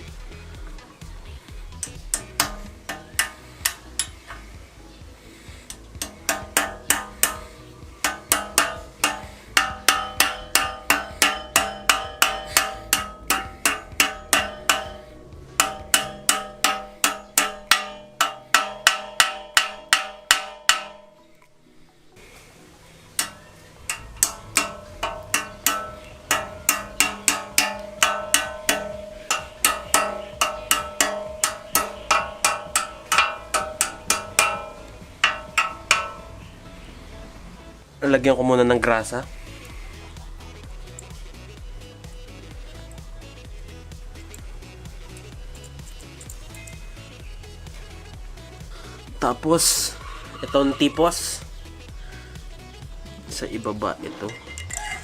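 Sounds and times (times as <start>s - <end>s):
hammer blows on metal: 1.8s - 4.6s, 5.2s - 21.3s, 23.2s - 36.7s.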